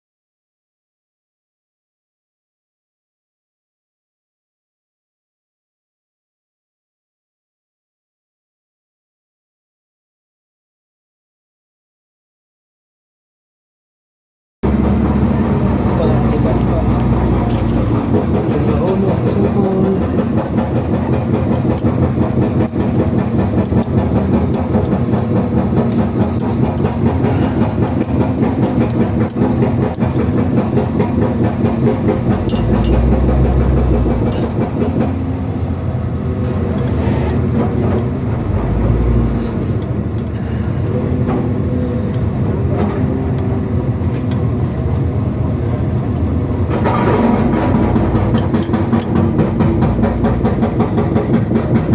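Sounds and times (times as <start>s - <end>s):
diesel engine running: 14.6s - 51.9s
hydraulic breaker hammering: 14.6s - 51.9s.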